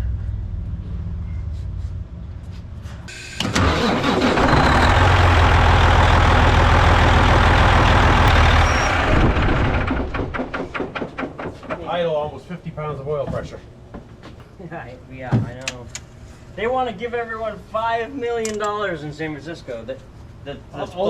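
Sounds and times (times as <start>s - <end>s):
truck diesel engine starting: 3.4s - 10.7s.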